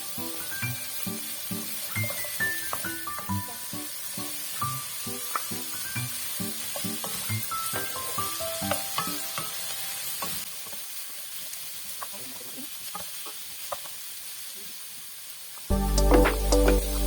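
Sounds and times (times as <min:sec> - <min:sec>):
background music: 0:00.0 - 0:10.0, 0:15.7 - 0:17.0
food sizzling in oil: 0:00.0 - 0:17.0.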